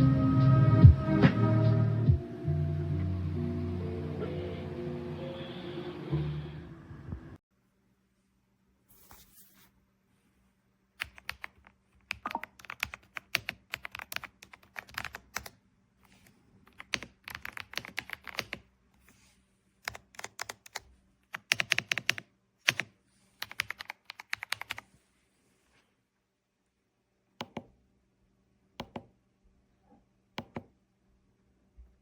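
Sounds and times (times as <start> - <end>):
mechanical keyboard typing: 11.0 - 15.5, 16.7 - 18.6, 19.8 - 24.8.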